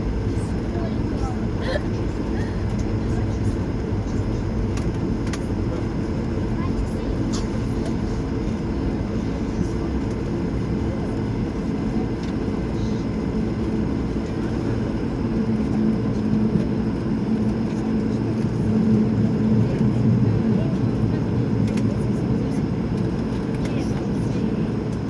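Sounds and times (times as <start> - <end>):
jet engines idling rumble: 0.0 - 25.0.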